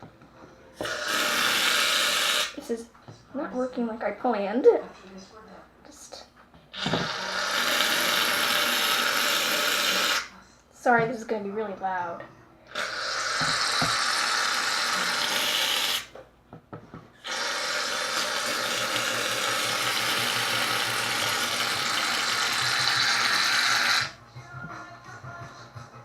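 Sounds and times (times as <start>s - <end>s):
aerosol can spraying: 0.8s - 2.6s, 6.8s - 10.3s, 12.8s - 16.1s, 17.3s - 24.1s.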